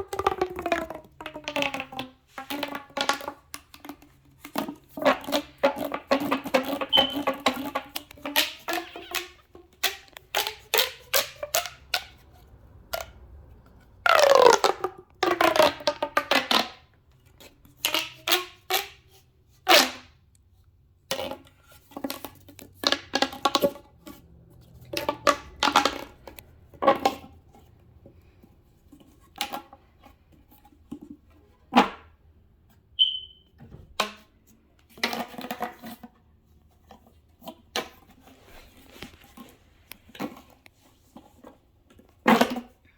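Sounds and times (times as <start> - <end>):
child making squeaks and pops: 6.8 - 7.4, 33.0 - 33.4.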